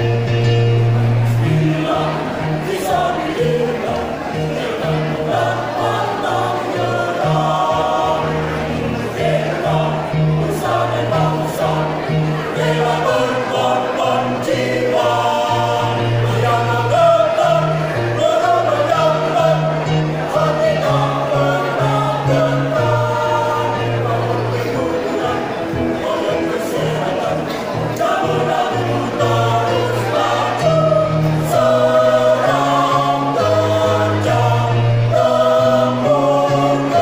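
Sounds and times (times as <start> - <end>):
choir singing: 0.0 - 37.0.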